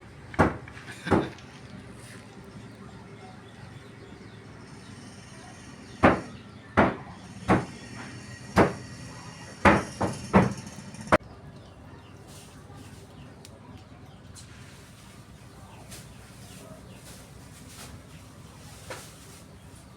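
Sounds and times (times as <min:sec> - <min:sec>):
sharp knocks on something hard: 0:06.0 - 0:07.8, 0:08.6 - 0:08.8, 0:09.6 - 0:10.6.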